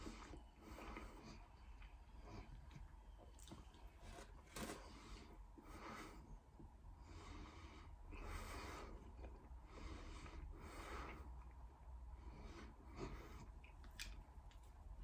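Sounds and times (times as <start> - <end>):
faint nasal breathing: 7.0 - 11.4.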